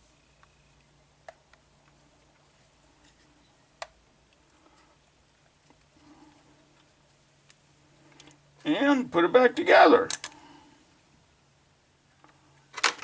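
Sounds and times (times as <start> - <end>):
small sharp plastic clicks: 10.1 - 10.4.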